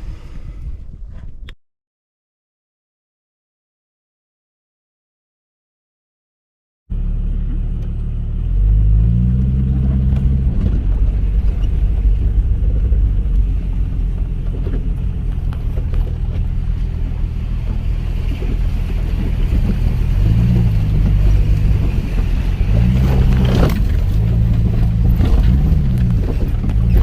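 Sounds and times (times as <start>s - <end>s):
jeep engine driving: 6.9s - 27.0s
tyre rumble on rough road: 6.9s - 27.0s.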